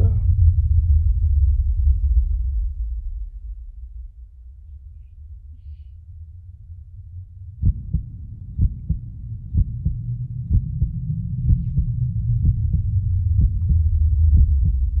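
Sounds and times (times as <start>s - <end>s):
low rumble: 0.0s - 15.0s
heartbeat thumps: 7.6s - 15.0s.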